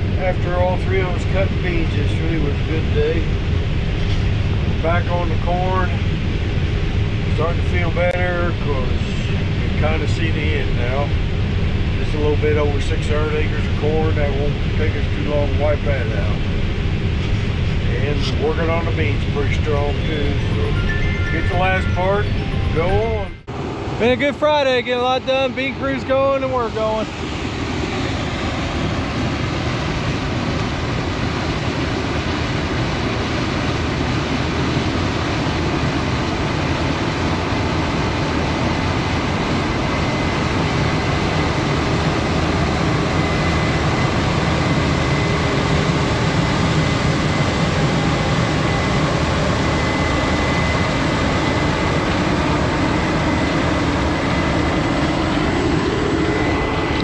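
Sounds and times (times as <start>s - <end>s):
combine harvester drone: 0.0s - 57.0s
faint steady high tone: 19.8s - 23.5s.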